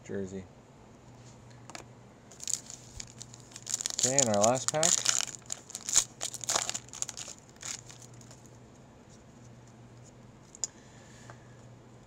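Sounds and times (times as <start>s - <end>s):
faint steady hum: 0.0s - 12.0s
wrapper crinkling and tearing: 2.3s - 8.5s.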